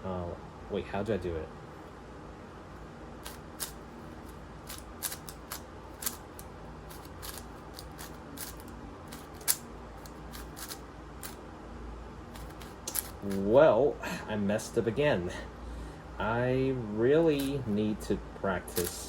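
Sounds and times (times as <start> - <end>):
speed cube clicking: 3.2 - 3.8, 4.7 - 11.4, 12.4 - 13.4.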